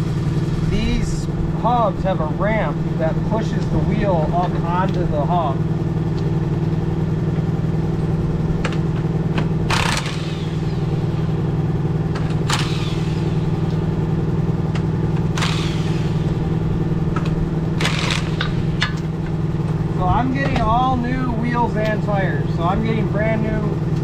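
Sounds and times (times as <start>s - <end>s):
engine running: 0.0s - 24.0s
metal clanks and knocks: 17.0s - 19.8s.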